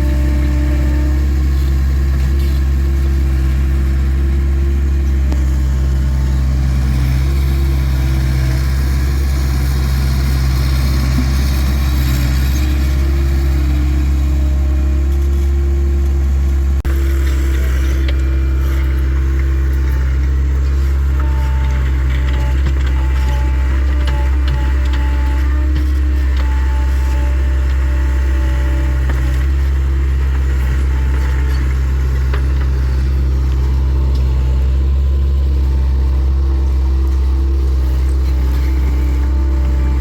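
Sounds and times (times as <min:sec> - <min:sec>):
diesel engine running: 0:00.0 - 0:40.0.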